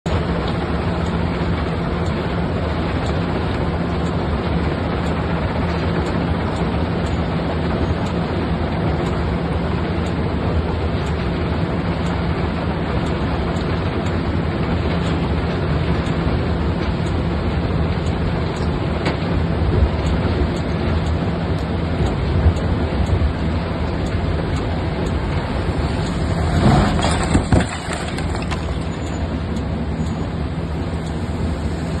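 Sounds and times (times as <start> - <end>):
diesel machinery droning: 0.1 - 32.0
burst of noise with sharp knocks: 26.0 - 29.2.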